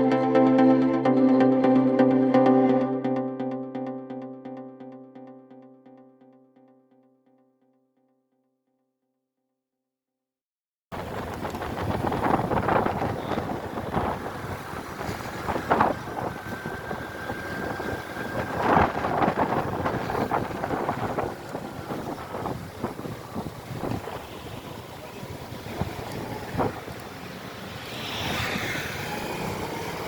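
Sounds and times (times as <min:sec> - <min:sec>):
road and traffic noise: 0:11.0 - 0:30.0
wind buffeting microphone: 0:11.0 - 0:30.0.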